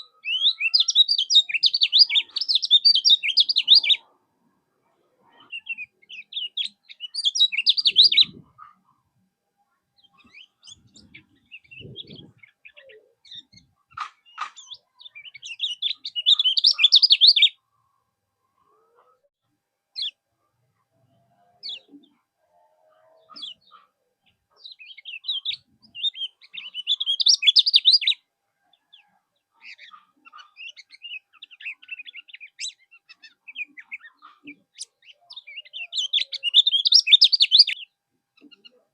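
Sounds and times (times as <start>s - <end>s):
songbird twittering chirps: 0.0s - 4.1s, 5.4s - 8.7s, 10.0s - 17.6s, 22.9s - 38.8s.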